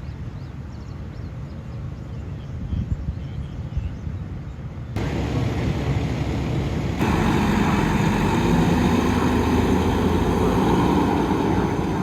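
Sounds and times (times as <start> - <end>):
vehicle engine running: 5.0 - 12.0.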